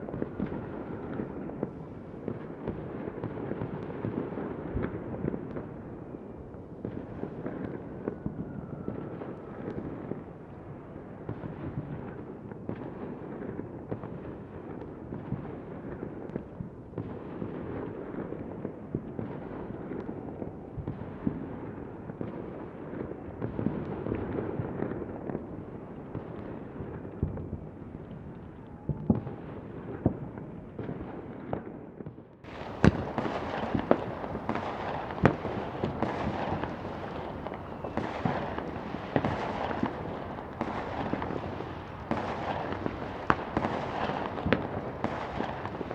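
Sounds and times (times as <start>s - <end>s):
distant gunfire: 32.5s - 45.9s.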